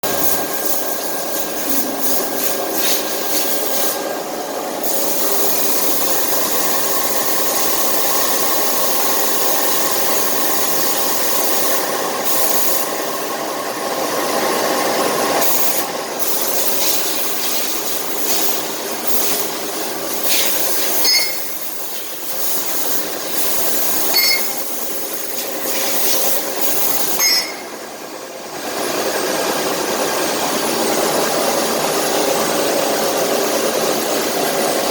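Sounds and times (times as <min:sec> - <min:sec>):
milling cutter cutting steel: 0:16.7 - 0:27.9
short high chirp: 0:21.0 - 0:21.6, 0:24.1 - 0:24.7, 0:27.2 - 0:27.8.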